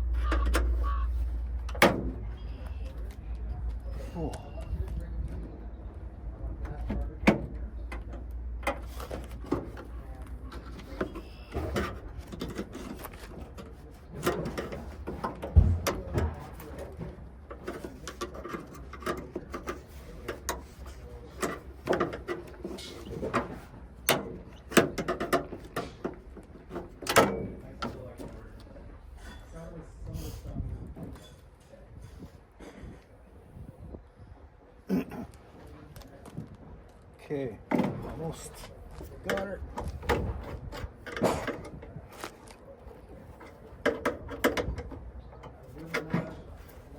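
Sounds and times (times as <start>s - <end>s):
clicks and rattles of lock work: 6.6s - 28.7s, 37.7s - 46.9s
heavy thump: 15.5s - 17.2s.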